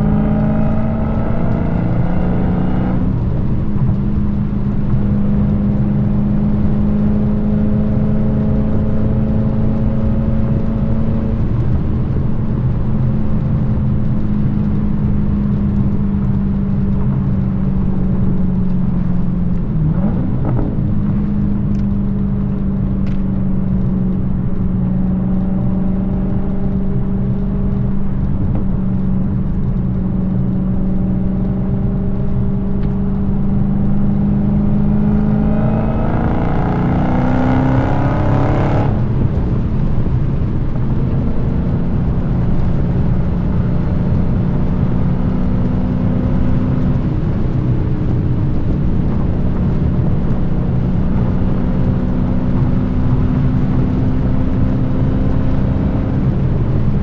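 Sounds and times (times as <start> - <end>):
car engine exhaust accelerating: 0.0 - 57.0.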